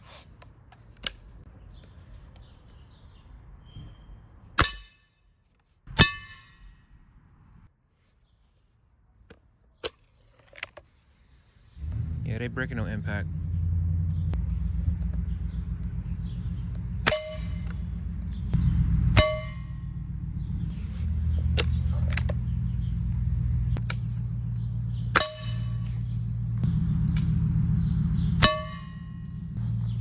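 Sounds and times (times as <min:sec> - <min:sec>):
steady low hum: 0:11.8 - 0:30.0.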